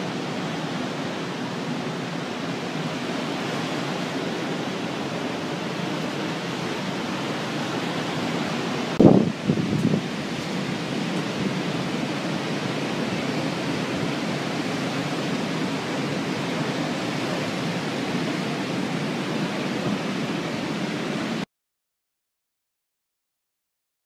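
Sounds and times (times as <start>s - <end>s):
rushing wind and water: 0.0s - 21.5s.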